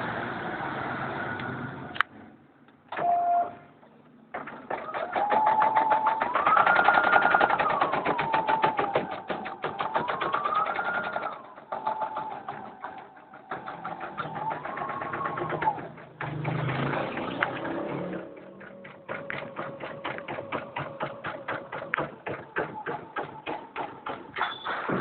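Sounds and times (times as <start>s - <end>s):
short beep: 3.0s - 3.7s
embroidery machine stitching: 4.4s - 22.5s.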